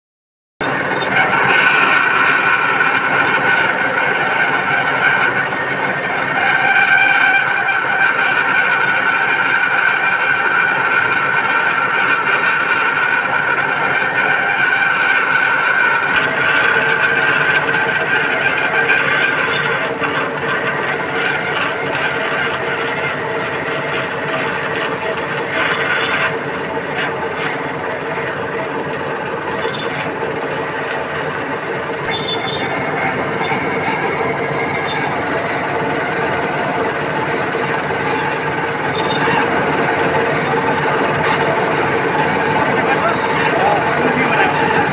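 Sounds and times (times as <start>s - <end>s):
lathe whining: 0.6s - 44.9s
short harsh machine noises: 14.3s - 44.9s.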